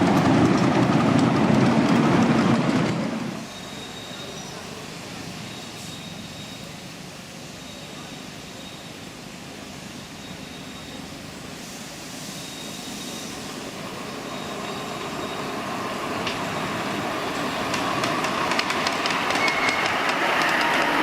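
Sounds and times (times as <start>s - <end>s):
wheels clicking over rail joints: 0.0s - 3.2s, 16.1s - 21.0s
miniature train running on track: 0.0s - 4.8s, 13.7s - 21.0s
wheel squealing on rail: 2.8s - 6.9s, 7.5s - 9.2s, 10.0s - 11.2s, 12.3s - 21.0s.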